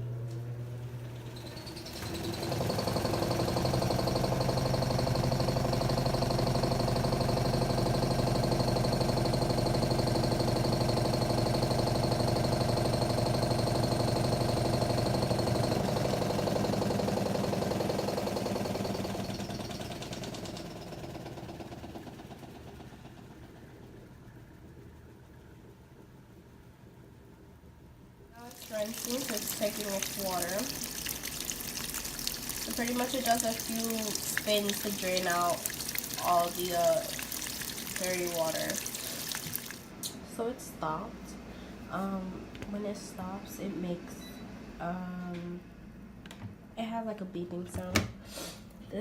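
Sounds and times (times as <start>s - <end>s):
washing machine motor humming: 0.0s - 25.8s, 28.3s - 41.1s.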